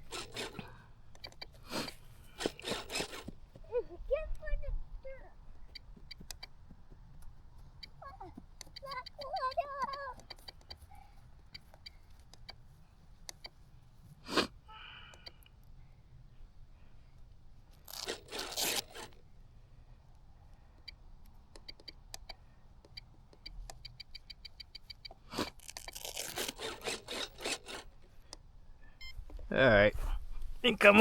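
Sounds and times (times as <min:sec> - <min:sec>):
rapid small clicks: 0:00.0 - 0:03.6, 0:05.5 - 0:13.6, 0:15.0 - 0:15.8, 0:17.2 - 0:19.2, 0:20.1 - 0:28.5
crunching and scraping handling noises: 0:00.0 - 0:03.7, 0:17.2 - 0:19.3, 0:25.0 - 0:28.4.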